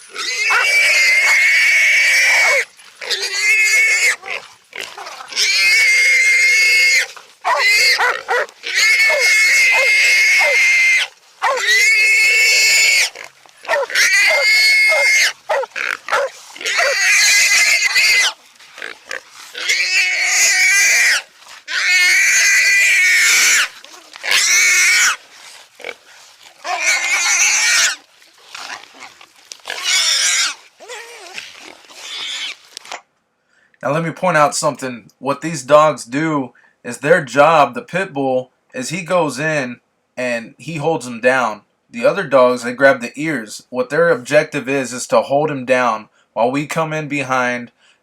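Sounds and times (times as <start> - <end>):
hog squealing loudly: 0.1 - 25.2, 26.6 - 28.0, 29.7 - 32.6.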